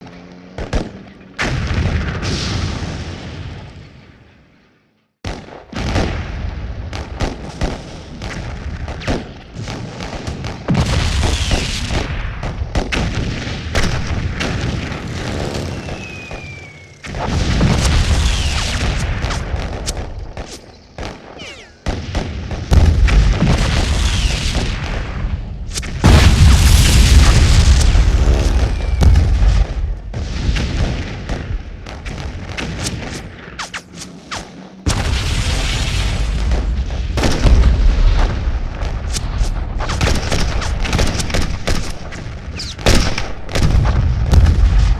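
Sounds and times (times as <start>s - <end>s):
explosion booms: 0.7s - 4.2s, 9.7s - 20.4s, 21.4s - 33.4s, 34.8s - 41.0s, 42.8s - 44.9s
gunshot cracks: 6.9s - 44.9s
falling whistle: 15.7s - 17.0s.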